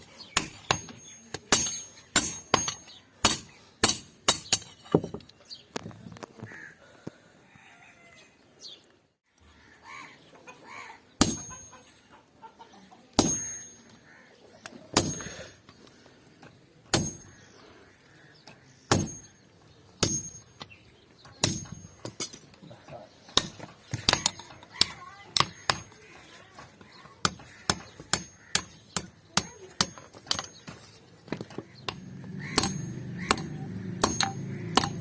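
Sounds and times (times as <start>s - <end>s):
hammer striking iron on anvil: 0.0s - 5.0s, 11.2s - 11.9s, 13.2s - 13.9s, 15.0s - 15.6s, 16.9s - 17.6s, 18.9s - 19.4s, 20.0s - 20.7s, 21.4s - 22.4s, 23.4s - 26.1s, 27.2s - 30.8s, 31.8s - 35.0s.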